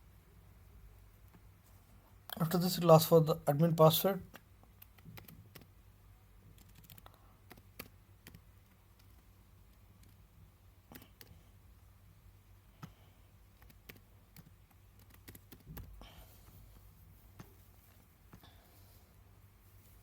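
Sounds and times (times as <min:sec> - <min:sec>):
low steady hum: 0:00.0 - 0:20.0
computer keys typing: 0:04.8 - 0:05.7, 0:06.6 - 0:09.2, 0:13.6 - 0:15.9.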